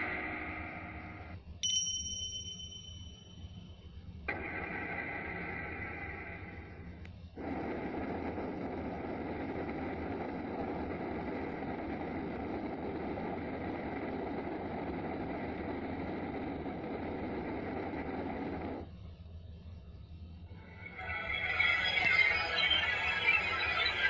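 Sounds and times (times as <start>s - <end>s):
steady rushing noise: 4.3s - 18.9s.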